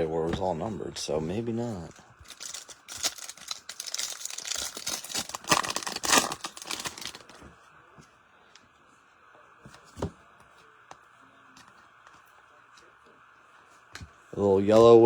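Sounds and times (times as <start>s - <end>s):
wrapper tearing and crinkling: 2.3s - 7.4s.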